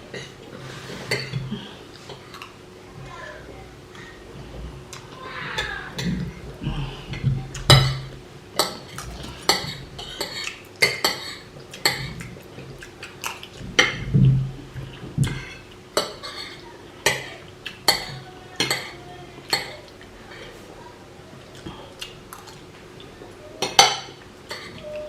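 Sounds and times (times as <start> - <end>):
cutlery clinking on plates: 23.6 - 25.0.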